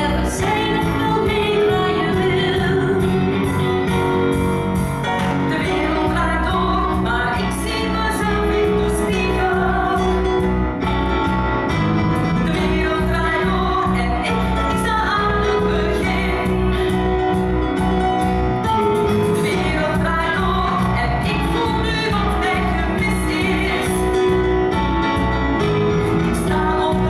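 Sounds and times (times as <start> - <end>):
singing voices: 0.0 - 3.4, 5.3 - 10.5, 18.7 - 24.4
band with pulsing bass beat: 0.0 - 27.0.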